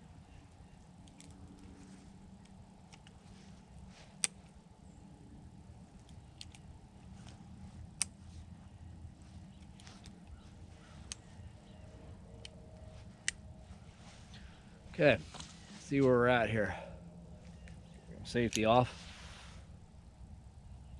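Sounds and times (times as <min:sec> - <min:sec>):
low steady hum: 0:00.0 - 0:20.9
revolver metallic clicks: 0:05.9 - 0:08.2, 0:17.5 - 0:18.8.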